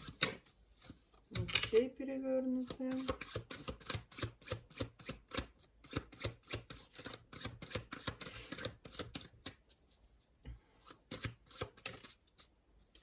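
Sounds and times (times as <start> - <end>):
cards being shuffled: 2.6 - 9.7, 10.8 - 13.0.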